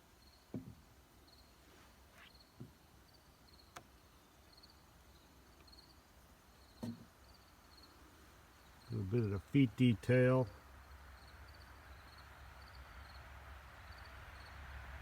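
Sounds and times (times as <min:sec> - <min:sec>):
faint insect chirping: 0:00.0 - 0:15.0
soft knocks: 0:00.5 - 0:00.8, 0:06.8 - 0:07.1.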